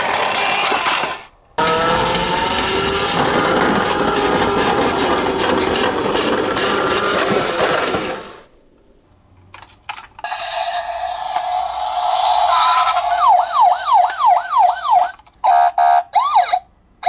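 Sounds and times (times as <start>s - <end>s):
toy cars rattling down slope: 0.0s - 8.5s, 9.6s - 15.4s
steady siren tone: 10.3s - 15.2s.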